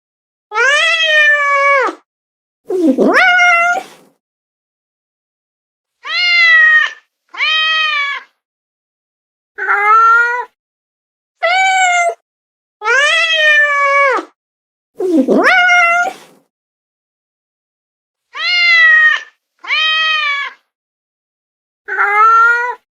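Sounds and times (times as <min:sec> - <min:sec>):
cat meowing: 0:00.5 - 0:02.0, 0:02.7 - 0:04.1, 0:06.0 - 0:08.4, 0:09.6 - 0:10.6, 0:11.4 - 0:12.2, 0:12.8 - 0:14.3, 0:15.1 - 0:16.4, 0:18.4 - 0:20.7, 0:21.9 - 0:22.8.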